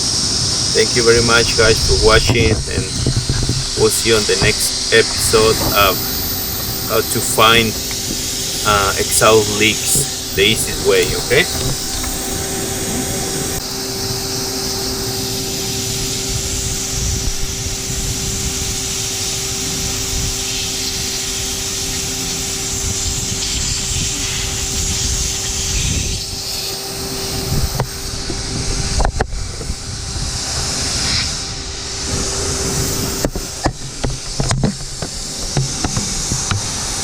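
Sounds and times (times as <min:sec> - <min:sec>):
vacuum cleaner motor hum: 0:00.0 - 0:37.0
sharp knocks: 0:33.2 - 0:37.0.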